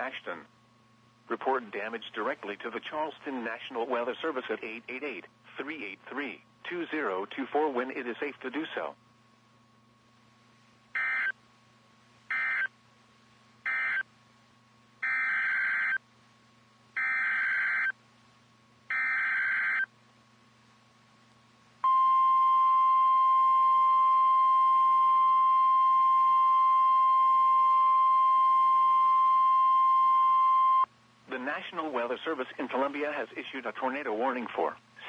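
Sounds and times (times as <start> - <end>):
steady warning alarm tone: 11.0 - 11.3, 12.3 - 12.7, 13.7 - 14.0, 15.0 - 16.0, 17.0 - 17.9, 18.9 - 19.9, 21.8 - 30.9.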